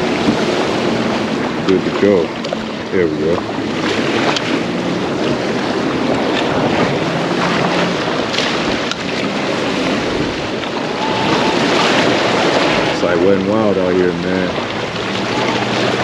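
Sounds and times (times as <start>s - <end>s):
ocean waves washing: 0.0s - 16.0s
strong wind on microphone: 0.0s - 16.0s.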